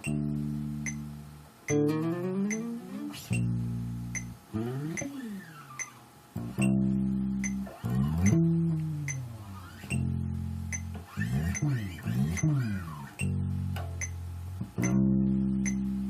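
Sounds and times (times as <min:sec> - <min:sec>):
steady ticking click: 0:00.0 - 0:06.8, 0:07.4 - 0:15.9
electric bass guitar sliding notes: 0:00.0 - 0:16.0.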